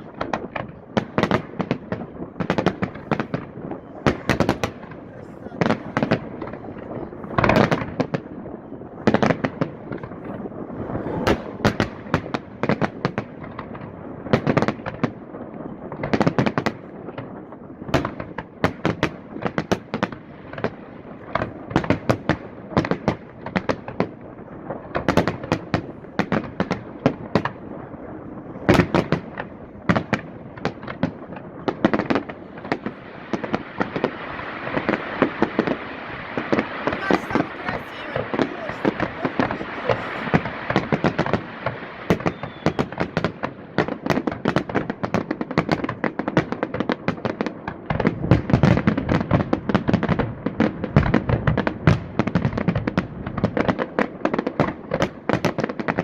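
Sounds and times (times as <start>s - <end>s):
crackling hiss of fireworks: 0.0s - 56.0s
firework shells bursting: 36.4s - 43.3s.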